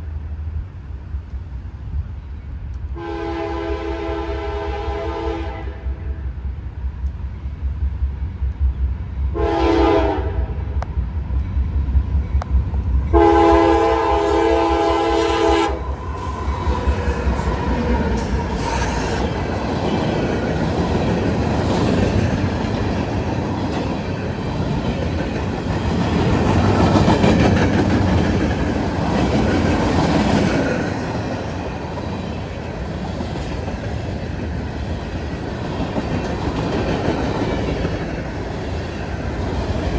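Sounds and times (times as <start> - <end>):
freight train rumbling past: 0.0 - 39.9
locomotive air horn blasts: 3.0 - 6.2, 9.4 - 10.6, 13.1 - 16.5
wheels clacking over rail joints: 16.0 - 39.9.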